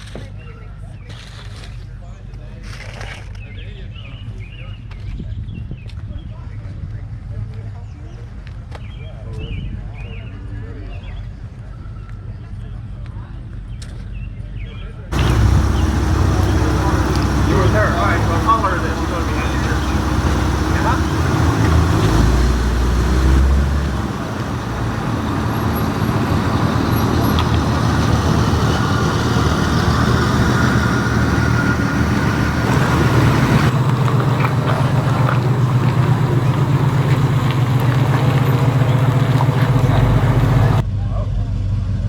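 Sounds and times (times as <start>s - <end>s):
car engine rumbling: 15.1s - 40.8s.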